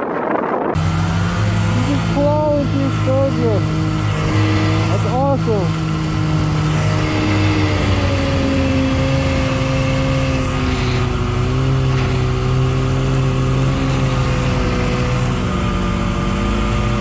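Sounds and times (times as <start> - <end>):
utility vehicle engine droning: 0.0 - 17.0.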